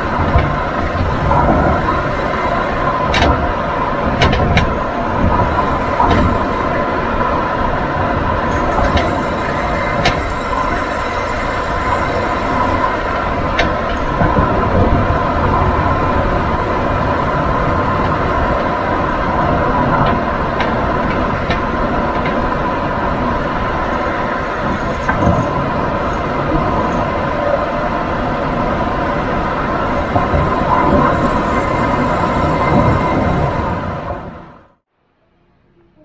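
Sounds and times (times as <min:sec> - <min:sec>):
metal clunking knocks: 0:00.0 - 0:07.2.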